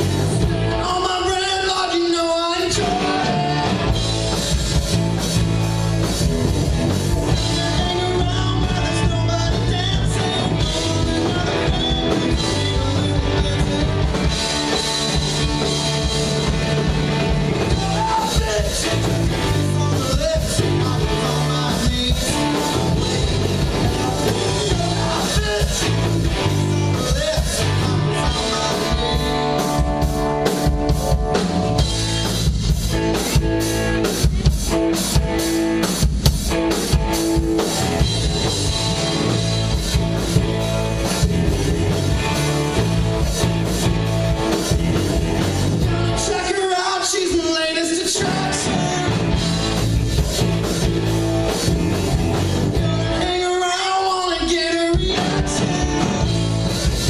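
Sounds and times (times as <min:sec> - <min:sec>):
person singing: 0:00.0 - 0:04.0, 0:07.3 - 0:15.6, 0:17.6 - 0:30.1, 0:45.6 - 0:49.6, 0:52.6 - 0:57.0
bass guitar: 0:00.0 - 0:57.0
drum kit: 0:00.0 - 0:57.0
electric guitar: 0:00.0 - 0:57.0.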